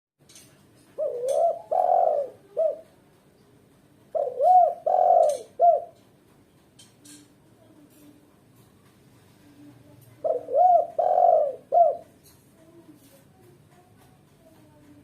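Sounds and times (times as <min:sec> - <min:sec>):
dove cooing: 0:01.0 - 0:03.0, 0:04.1 - 0:06.0, 0:10.1 - 0:12.8.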